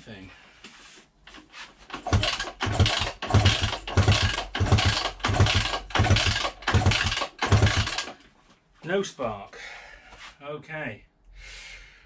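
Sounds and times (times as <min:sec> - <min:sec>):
engine being kick-started: 0:01.9 - 0:08.2.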